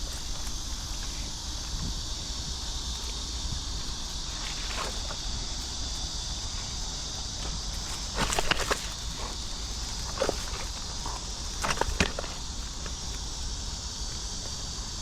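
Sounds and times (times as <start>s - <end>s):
steady high hiss: 0.0s - 15.0s
footsteps through vegetation: 3.0s - 13.3s.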